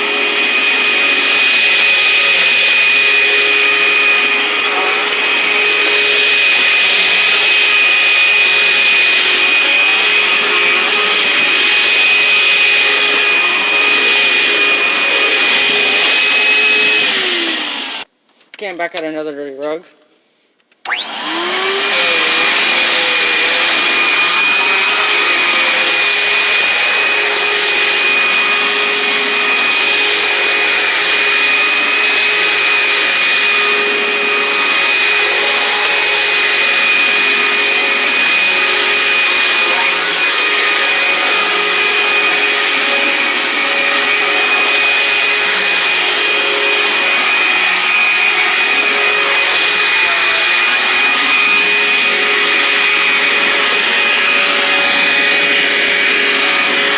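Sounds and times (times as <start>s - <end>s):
vacuum cleaner motor whining: 0.0s - 18.1s, 20.9s - 56.9s
vacuum hissing over rug: 0.0s - 18.1s, 20.9s - 56.9s.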